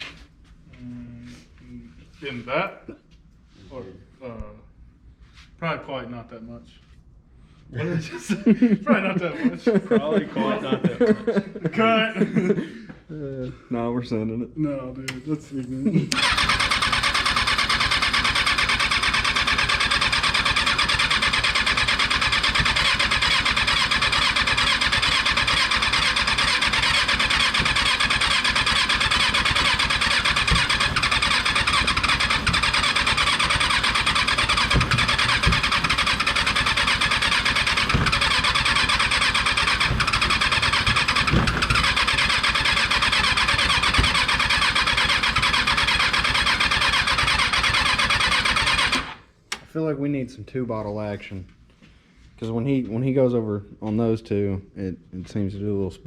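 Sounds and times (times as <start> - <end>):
motorcycle engine cranking: 16.1 - 49.3.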